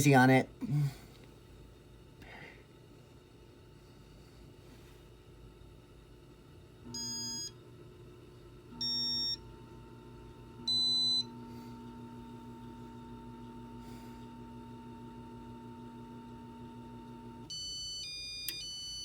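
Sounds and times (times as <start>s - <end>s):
fan motor humming: 0.0s - 19.0s.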